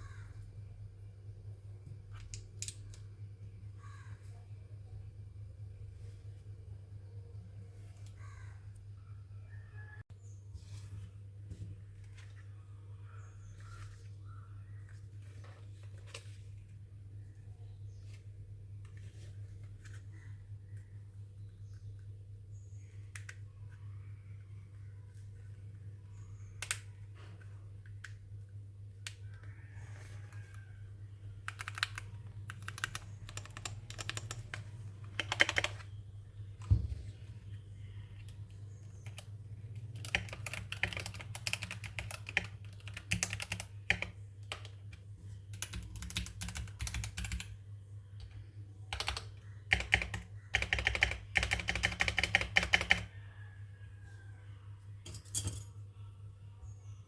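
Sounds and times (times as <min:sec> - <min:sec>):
mechanical keyboard typing: 0:31.4 - 0:35.9, 0:38.9 - 0:44.8, 0:45.5 - 0:47.5, 0:48.2 - 0:53.1.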